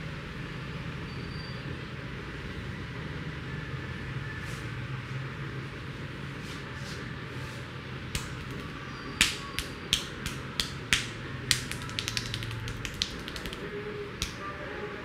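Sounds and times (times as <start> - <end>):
hands snapping pops: 8.2 - 14.4.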